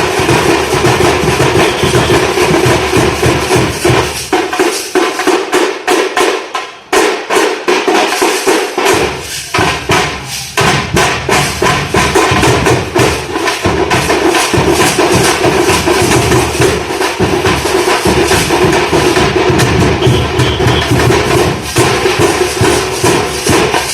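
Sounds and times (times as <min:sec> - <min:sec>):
drum troupe playing fast rhythm: 0:00.0 - 0:23.9
deep drum: 0:09.5 - 0:14.0.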